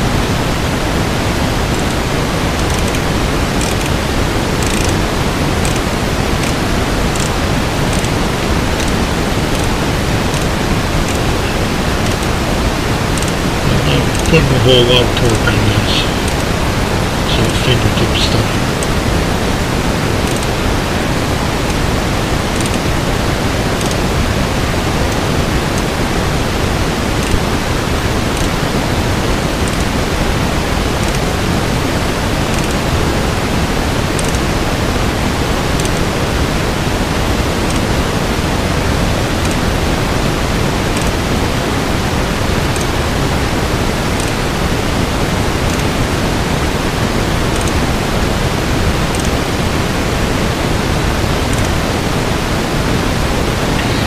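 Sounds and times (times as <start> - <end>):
steady background hiss: 0.0 - 54.0
faint high ticks: 29.6 - 29.9.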